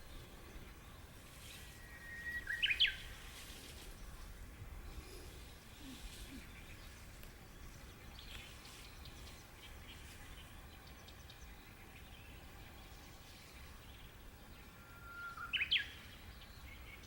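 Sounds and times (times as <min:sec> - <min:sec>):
faint bird chirps: 0:00.0 - 0:17.0
low outdoor rumble and hiss: 0:00.0 - 0:17.0.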